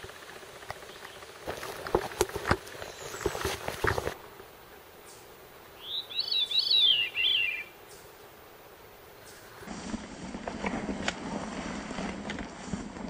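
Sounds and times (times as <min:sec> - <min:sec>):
songbird singing: 0:00.0 - 0:09.7.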